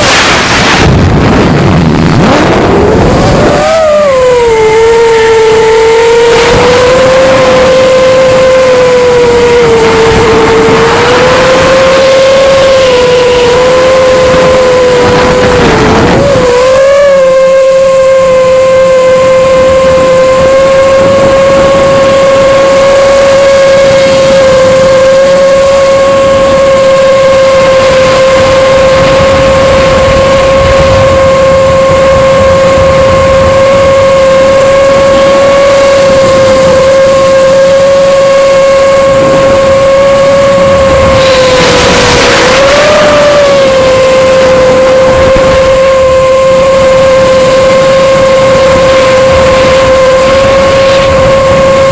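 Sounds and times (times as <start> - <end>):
drone motors whining: 0.0 - 51.9.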